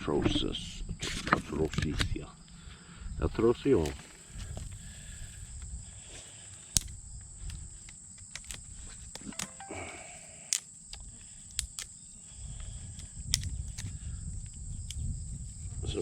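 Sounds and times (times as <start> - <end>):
insects chirring: 0.3 - 16.0
sharp clicks and snaps: 6.7 - 9.7, 10.5 - 11.9, 12.9 - 13.9.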